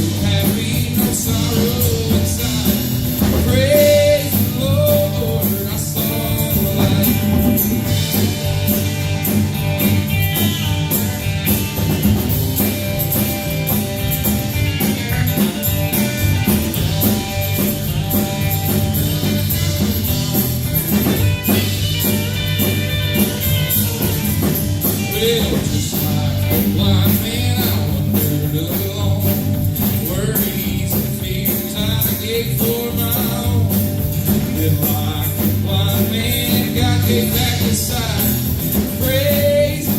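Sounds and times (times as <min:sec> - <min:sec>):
person singing: 0:00.0 - 0:07.9, 0:24.9 - 0:39.9
band playing worship song: 0:00.0 - 0:39.9
drums: 0:00.0 - 0:39.9
guitar: 0:00.0 - 0:39.9.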